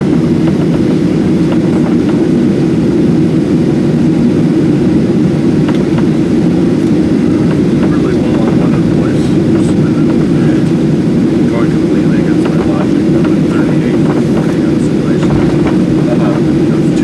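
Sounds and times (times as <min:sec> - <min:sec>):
jet cabin engine rumble: 0:00.0 - 0:17.0.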